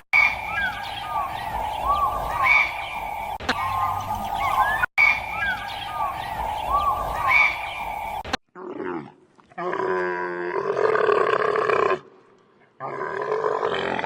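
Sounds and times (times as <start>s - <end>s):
birds chirping: 0.0s - 8.4s.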